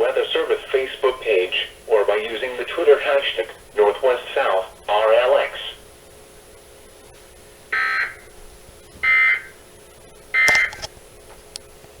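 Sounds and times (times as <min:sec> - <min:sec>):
shrill digital data tones: 0:07.8 - 0:08.3.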